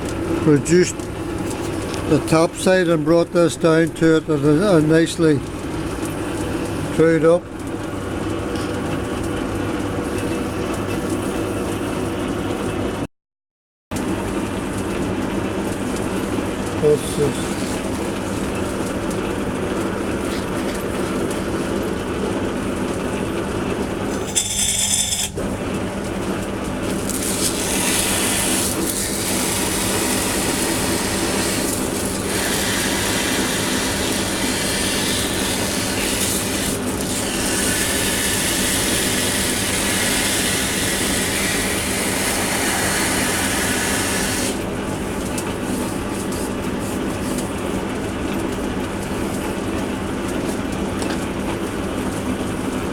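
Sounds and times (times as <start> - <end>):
lathe motor hum: 23.9 - 44.7
cutting tool scraping metal: 24.1 - 25.4, 26.9 - 44.6.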